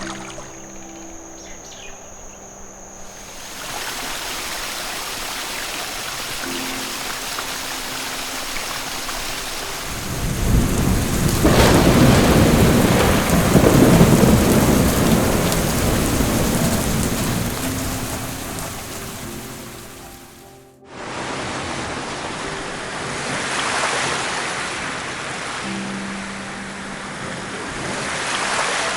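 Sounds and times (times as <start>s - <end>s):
steady rain: 3.0s - 28.9s
thunder rolling: 9.6s - 20.2s.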